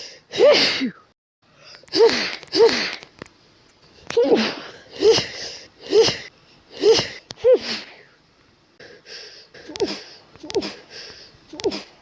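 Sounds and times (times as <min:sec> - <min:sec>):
woman sneezing: 0:00.4 - 0:01.0, 0:04.2 - 0:08.0, 0:09.6 - 0:10.8, 0:11.6 - 0:11.9.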